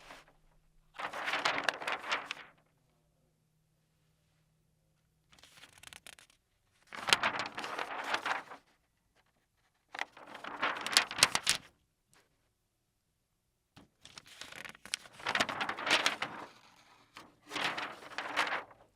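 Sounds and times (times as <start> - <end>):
paper pages turning: 0.0 - 0.4, 1.0 - 2.6, 5.3 - 11.7, 13.8 - 18.9.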